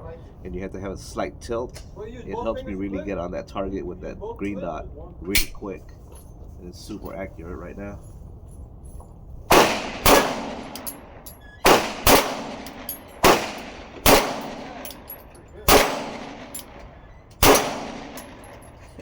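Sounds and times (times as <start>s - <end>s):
pistol shots echoing: 9.5s - 18.8s.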